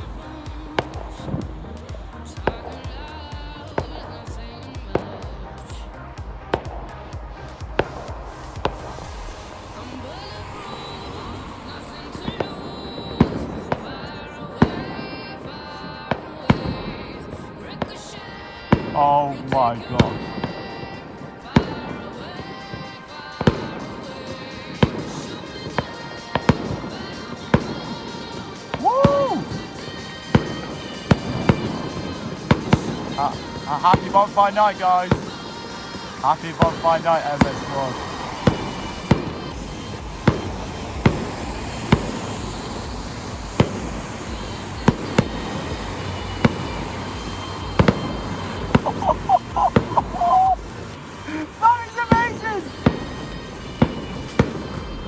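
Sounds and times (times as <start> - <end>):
background rumble: 0.0 - 15.7, 36.3 - 55.0
background music: 0.0 - 55.0
fireworks bangs: 0.0 - 55.0.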